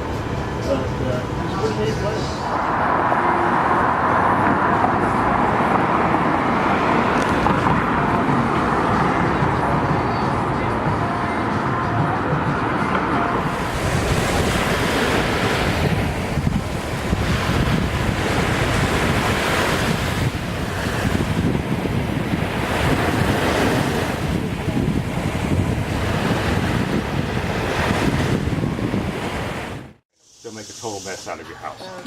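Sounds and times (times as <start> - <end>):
ocean surf washing ashore: 0.0 - 30.0
wind buffeting microphone: 4.0 - 11.0, 13.4 - 30.0.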